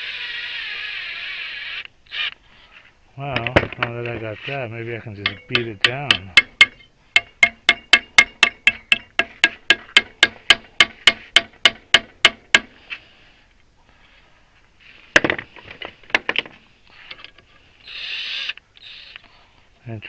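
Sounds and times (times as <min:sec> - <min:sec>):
hammer striking metal: 0:05.2 - 0:12.7.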